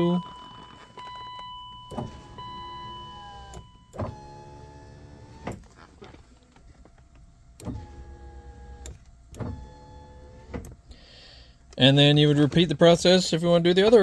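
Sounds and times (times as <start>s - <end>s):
power window motor whining: 0.3s - 10.9s
window glass clunks: 1.9s - 6.8s, 7.6s - 10.8s.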